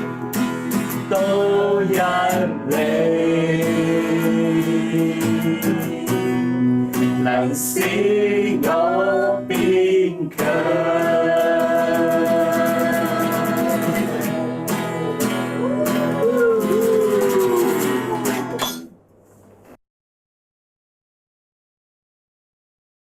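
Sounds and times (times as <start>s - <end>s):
acoustic guitar strumming: 0.0s - 18.9s
person singing: 1.1s - 18.6s.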